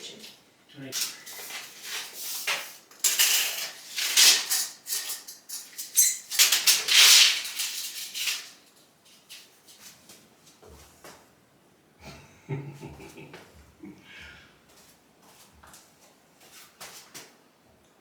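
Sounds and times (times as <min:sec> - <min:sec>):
objects rustling and clattering: 0:01.0 - 0:11.3.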